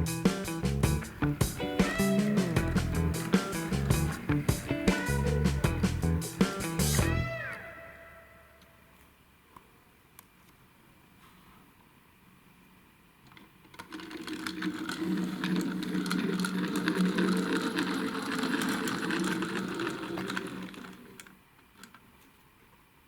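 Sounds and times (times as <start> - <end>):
toy car motor whirring: 13.8 - 21.3.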